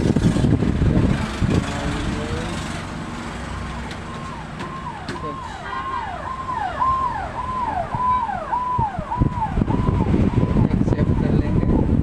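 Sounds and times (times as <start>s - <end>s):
low traffic hum: 0.0s - 12.0s
emergency vehicle siren wailing: 3.8s - 12.0s.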